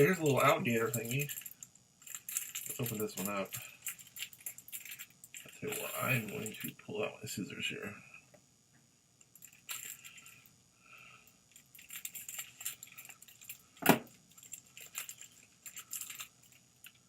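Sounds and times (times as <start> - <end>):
plastic crinkles and clicks: 0.0 - 6.8, 9.2 - 10.5, 11.5 - 17.0
scissors cutting plastic wrapper: 2.1 - 6.7.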